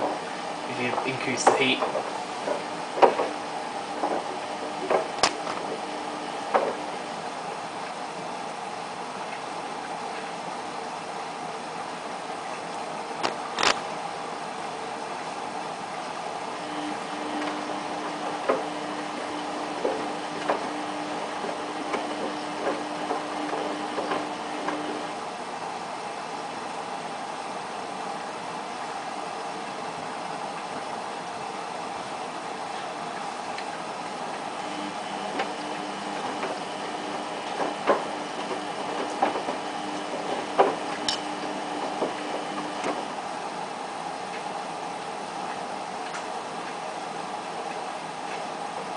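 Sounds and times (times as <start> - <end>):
drum clicks and knocks: 0.0 - 5.8
washing machine hum: 0.0 - 48.9
water rushing into washing machine: 0.0 - 48.9.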